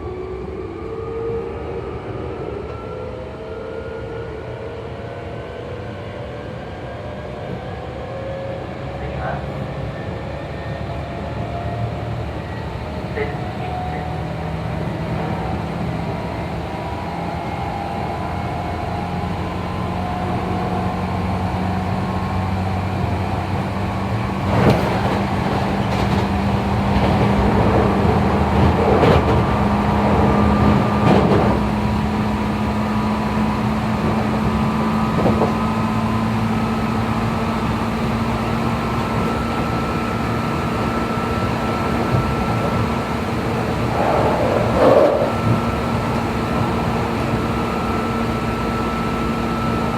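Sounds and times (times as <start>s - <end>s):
wheel and rail noise: 13.2s - 49.9s.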